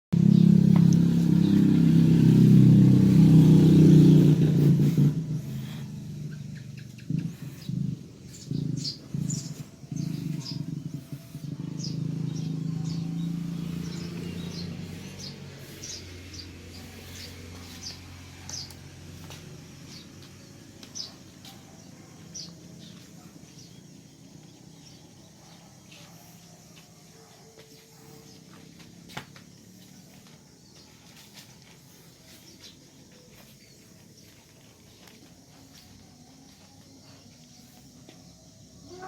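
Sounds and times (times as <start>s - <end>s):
low motor hum: 0.2s - 26.9s.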